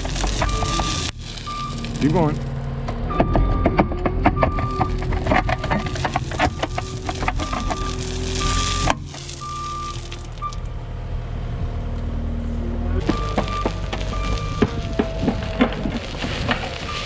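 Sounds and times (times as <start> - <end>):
crunching stone: 0.0 - 3.1, 3.8 - 10.7, 13.0 - 17.0
diesel engine running: 0.0 - 17.0
backup alarm beeping: 0.3 - 10.7, 13.0 - 17.0.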